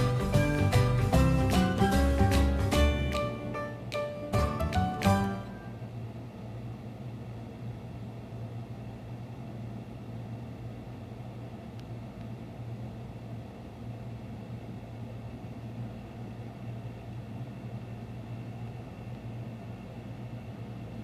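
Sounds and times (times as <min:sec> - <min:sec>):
steady low hum: 0:00.0 - 0:21.0
faint tick: 0:11.8 - 0:12.3.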